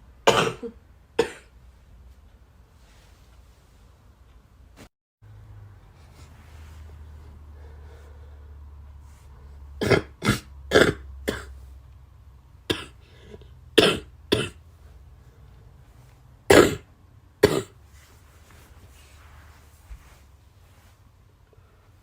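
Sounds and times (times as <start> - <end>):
person coughing: 0.2 - 1.5, 9.8 - 11.6, 12.7 - 14.6, 16.5 - 17.8.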